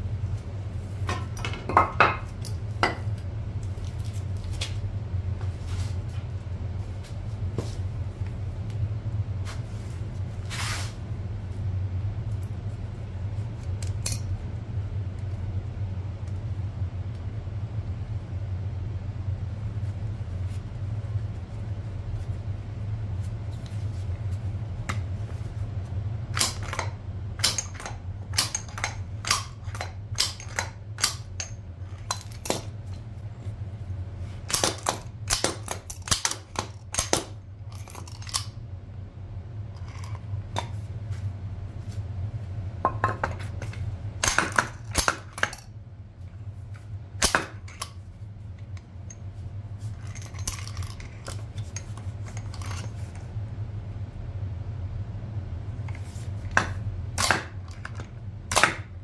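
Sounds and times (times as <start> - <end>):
steady low hum: 0.0 - 59.0
metal tools clinking: 34.5 - 38.5, 50.0 - 53.0.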